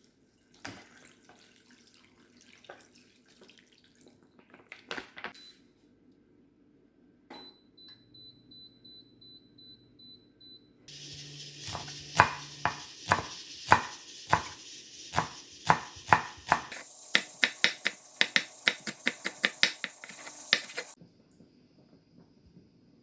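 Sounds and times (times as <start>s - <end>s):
steady hiss: 10.9s - 21.0s.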